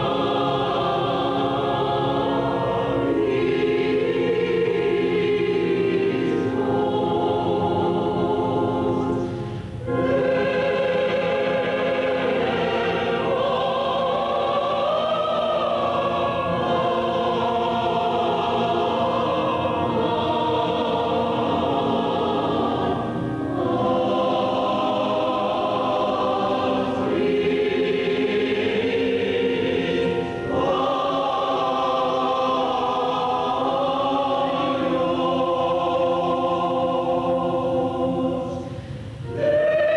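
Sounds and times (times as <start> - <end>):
choir singing: 0.0 - 39.9
singers breathing: 9.2 - 9.8, 38.6 - 39.3.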